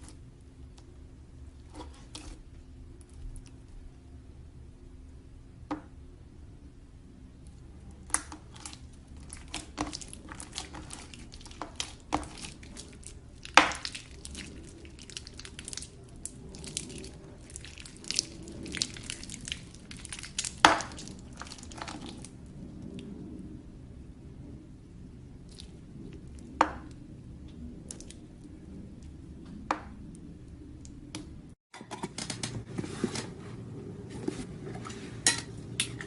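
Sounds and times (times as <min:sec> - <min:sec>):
slime crackling and popping: 0:08.0 - 0:22.4.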